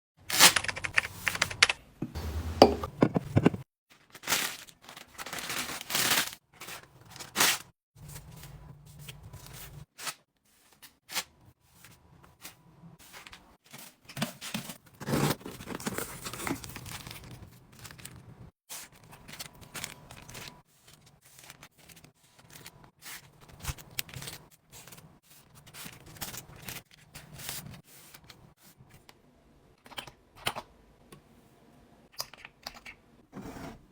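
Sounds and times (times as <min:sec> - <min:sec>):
packaging tearing and crinkling: 0:04.0 - 0:07.6, 0:18.9 - 0:20.6.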